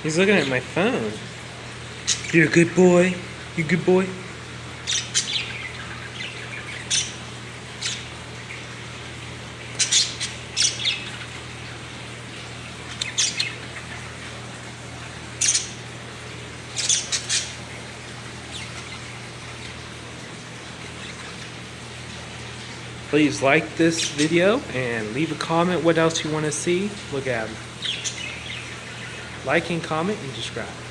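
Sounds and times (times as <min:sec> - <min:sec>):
steady low hum: 0:00.0 - 0:30.9
bird squawking: 0:04.8 - 0:08.7, 0:09.7 - 0:11.8, 0:12.7 - 0:14.4, 0:15.3 - 0:15.9, 0:16.7 - 0:17.6, 0:27.8 - 0:29.5.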